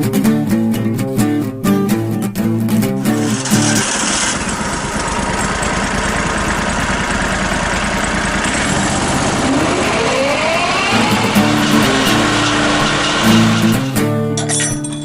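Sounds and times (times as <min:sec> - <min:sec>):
petrol engine running: 0:03.0 - 0:14.1.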